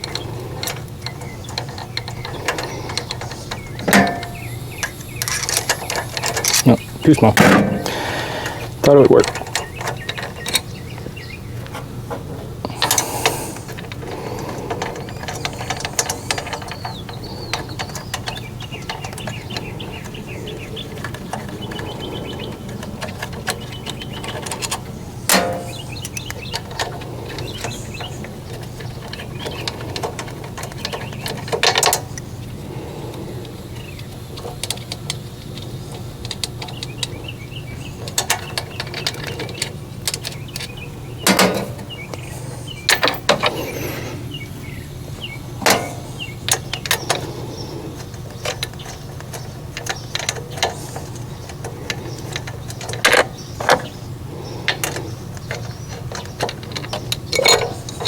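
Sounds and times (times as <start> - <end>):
metal tool clicks and clanks: 0.0 - 8.0, 23.0 - 27.8, 42.9 - 44.0, 45.6 - 47.3
birds chirping: 0.0 - 58.0
steady low hum: 0.0 - 58.0
sharp knocks: 7.3 - 8.2.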